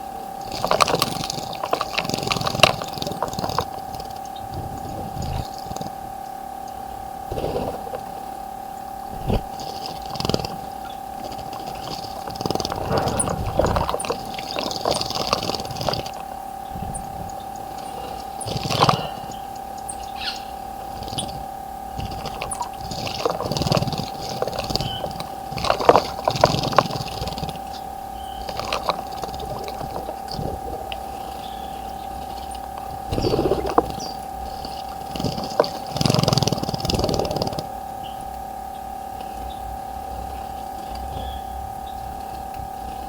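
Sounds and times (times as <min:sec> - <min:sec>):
steady tone: 0:00.0 - 0:43.0
birds splashing in water: 0:09.0 - 0:37.0
high bird chirps: 0:16.6 - 0:21.4, 0:24.6 - 0:25.3, 0:27.1 - 0:29.3, 0:31.2 - 0:34.8, 0:40.8 - 0:42.1.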